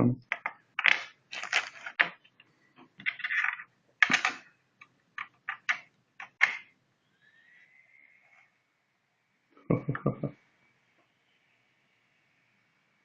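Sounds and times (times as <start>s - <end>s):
faint high whine: 7.0s - 13.0s.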